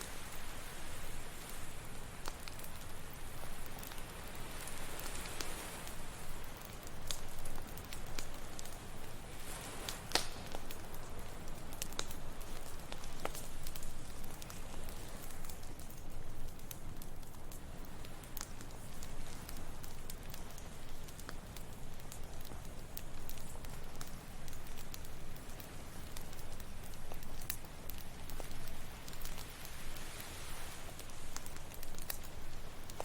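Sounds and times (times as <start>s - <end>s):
campfire crackling and popping: 0.0s - 33.0s
ocean waves: 28.8s - 31.4s.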